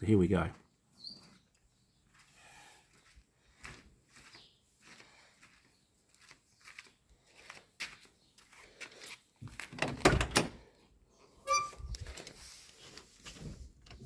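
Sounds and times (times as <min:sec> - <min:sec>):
brief squeak: 0:11.4 - 0:12.0.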